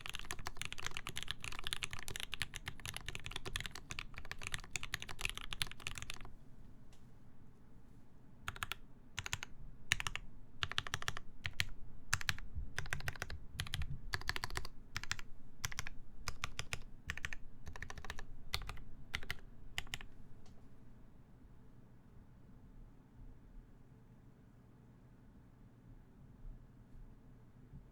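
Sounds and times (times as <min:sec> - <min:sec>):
mechanical keyboard typing: 0:00.0 - 0:06.3, 0:08.5 - 0:20.1.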